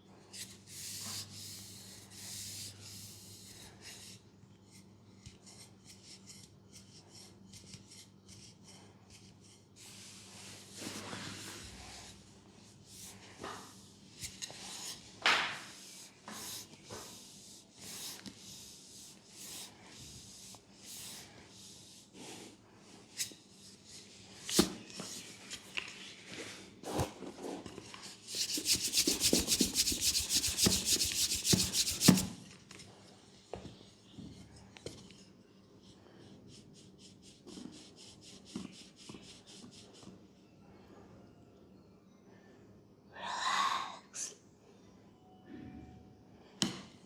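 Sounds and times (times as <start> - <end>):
hands rubbing bare skin: 28.3 - 32.3.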